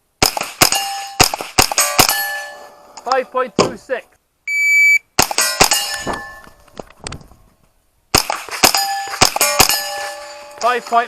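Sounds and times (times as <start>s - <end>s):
rifle shots: 0.2s - 2.5s, 5.2s - 6.4s, 8.1s - 10.4s
steel plate ringing: 1.8s - 3.0s, 5.4s - 6.6s, 8.7s - 11.0s
shot timer beep: 4.5s - 5.0s.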